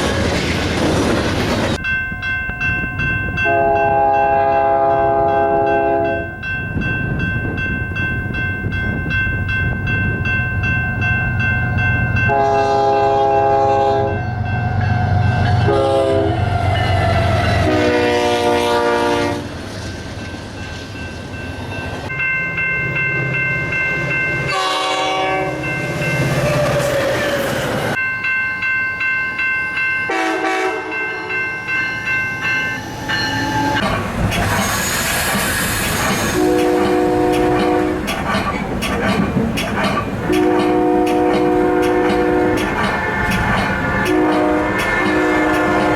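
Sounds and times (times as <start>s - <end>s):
train rumbling and clattering on rails: 0.0s - 45.9s
steady high ringing: 1.8s - 15.8s, 19.7s - 26.6s, 27.9s - 33.8s
locomotive air horn blasts: 3.4s - 6.3s, 12.3s - 14.5s, 15.1s - 19.5s, 24.5s - 25.7s, 30.1s - 31.4s, 36.3s - 38.0s, 40.3s - 43.4s, 44.0s - 45.9s.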